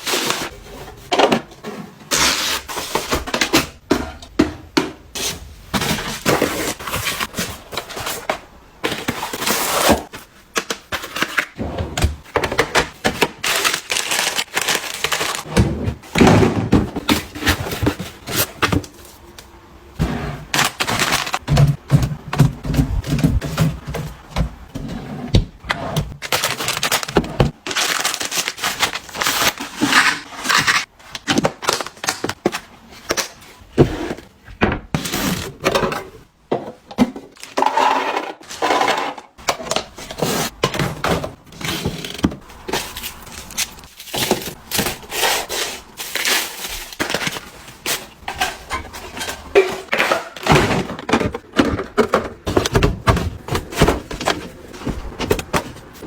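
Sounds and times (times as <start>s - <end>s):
packaging crinkling and tearing: 13.2s - 15.5s, 20.6s - 21.4s, 26.2s - 30.9s, 42.5s - 48.5s.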